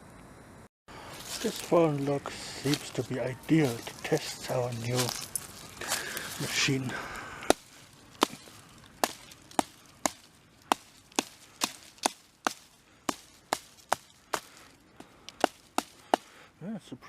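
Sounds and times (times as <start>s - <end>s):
hatchet chopping into log: 8.2s - 14.6s, 15.3s - 16.3s.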